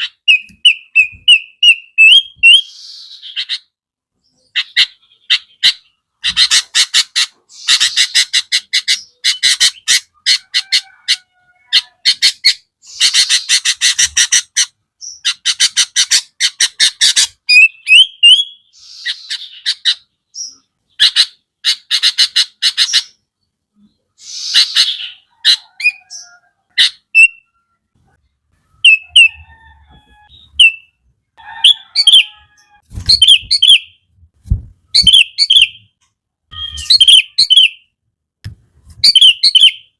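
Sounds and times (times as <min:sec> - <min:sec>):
bird chattering and whistling: 0:00.0 - 0:03.6, 0:11.8 - 0:23.2, 0:24.2 - 0:27.5, 0:28.8 - 0:29.6, 0:30.2 - 0:31.0, 0:31.6 - 0:32.4, 0:33.0 - 0:34.0, 0:34.9 - 0:35.9, 0:36.5 - 0:37.9, 0:39.0 - 0:39.9.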